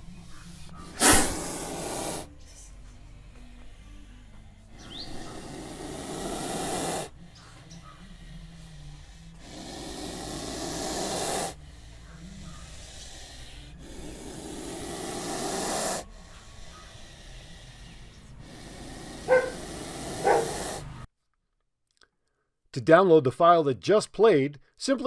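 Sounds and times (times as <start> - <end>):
breathy noise: 0.0 - 21.1
snake hissing: 0.0 - 21.1
short sharp sounds: 1.0 - 2.2.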